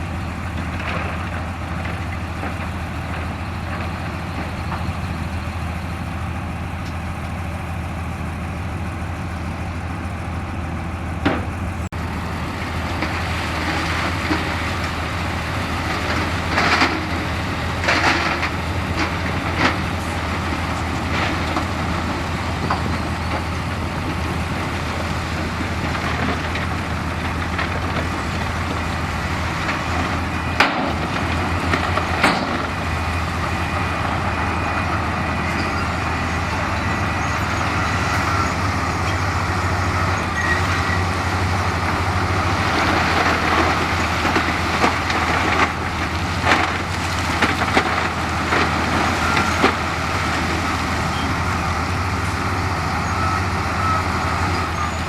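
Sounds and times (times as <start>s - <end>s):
diesel engine under load: 0.0s - 55.0s.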